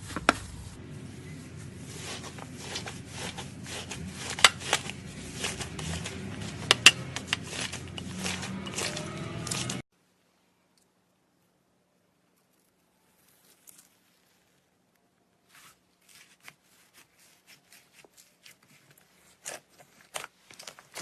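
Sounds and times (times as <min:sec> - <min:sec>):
slime squishing by hand: 0:01.2 - 0:09.8, 0:16.0 - 0:21.0.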